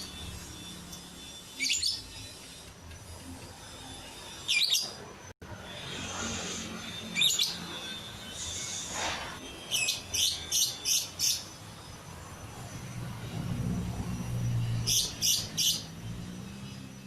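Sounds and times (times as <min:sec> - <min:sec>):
lovebird chirping shrill bursts: 0:00.0 - 0:02.4.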